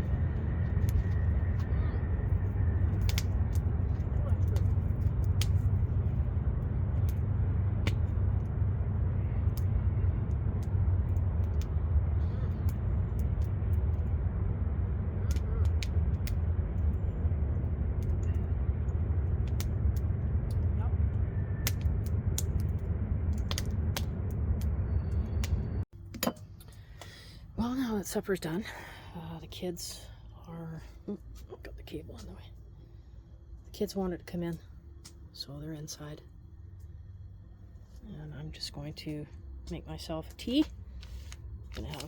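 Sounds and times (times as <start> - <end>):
campfire crackling and popping: 0.0 - 26.4
low rumble: 0.0 - 42.0.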